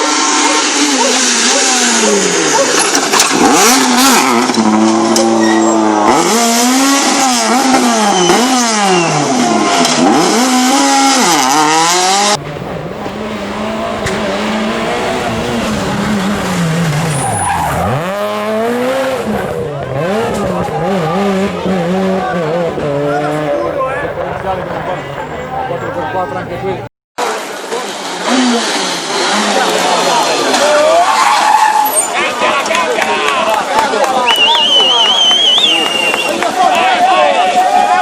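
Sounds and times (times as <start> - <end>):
rally car engines revving hard: 0.0 - 26.9, 27.9 - 32.2
car passing: 5.9 - 31.1.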